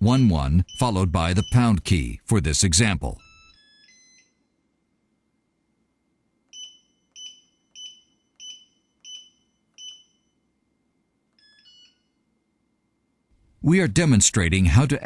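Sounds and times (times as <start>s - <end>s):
keypad lock beeping: 0.1s - 2.0s, 6.5s - 10.3s, 11.4s - 12.1s.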